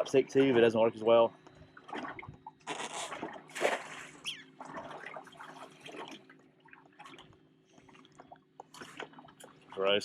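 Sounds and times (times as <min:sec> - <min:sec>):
faint steady hum: 0:00.0 - 0:10.0
water sloshing and splashing: 0:00.0 - 0:10.0.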